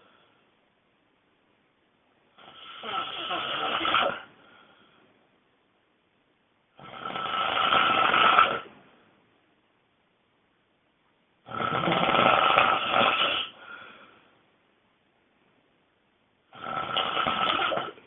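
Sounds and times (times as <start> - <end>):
person snoring loudly: 2.4 - 4.3, 6.8 - 8.7, 11.4 - 13.6, 16.5 - 18.0.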